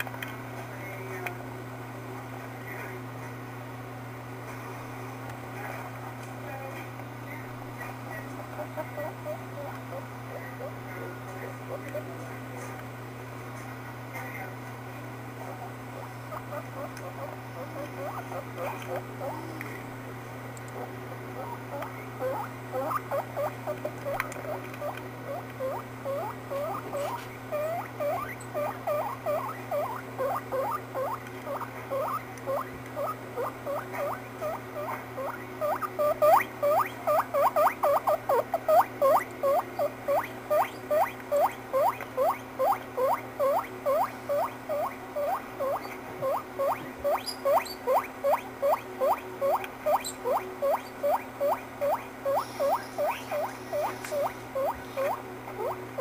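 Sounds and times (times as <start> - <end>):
guinea pig squeaking: 7.3 - 12.3, 15.4 - 19.8, 20.8 - 56.0.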